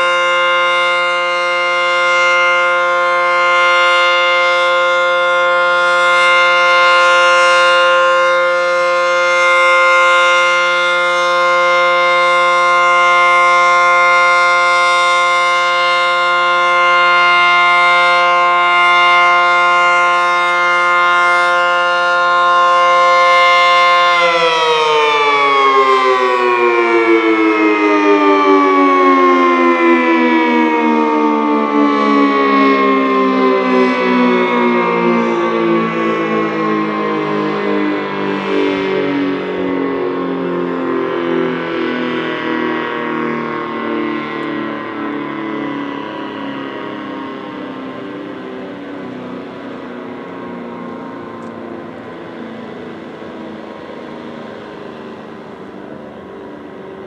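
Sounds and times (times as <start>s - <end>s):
tornado siren winding down: 0.0s - 57.0s.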